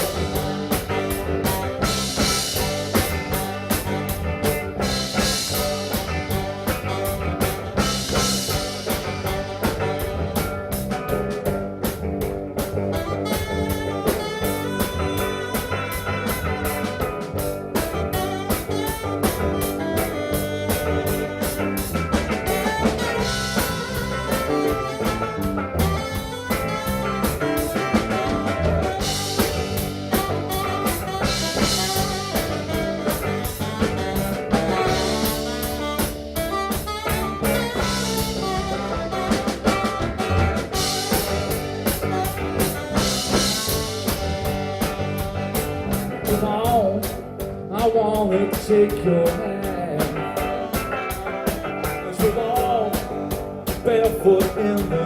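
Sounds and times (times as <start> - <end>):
drum kit steady beat: 0.0 - 55.0
live band playing instrumental: 0.0 - 55.0.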